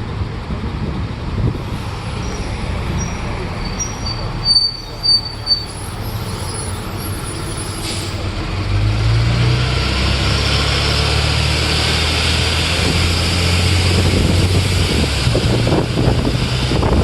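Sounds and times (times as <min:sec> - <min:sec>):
bus engine hum: 0:00.0 - 0:17.0
wind noise hiss: 0:01.3 - 0:04.5, 0:13.8 - 0:17.0
short high squeaks: 0:01.4 - 0:08.2.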